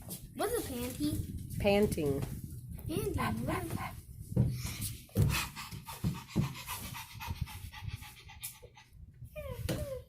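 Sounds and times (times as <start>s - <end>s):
child panting like a dog: 4.5s - 10.0s.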